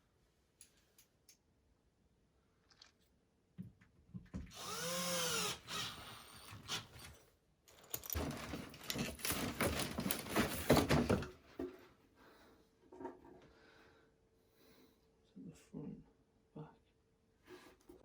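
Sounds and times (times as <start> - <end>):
power drill running: 4.5 - 7.0.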